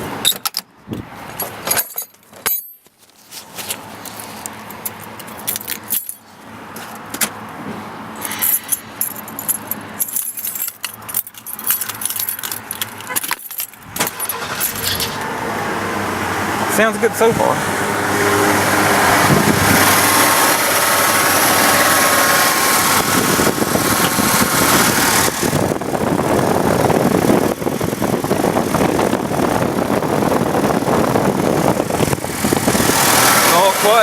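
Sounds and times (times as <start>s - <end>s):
keys jangling: 1.4s - 3.0s, 4.0s - 6.2s, 8.2s - 15.2s
car engine idling: 11.0s - 34.0s.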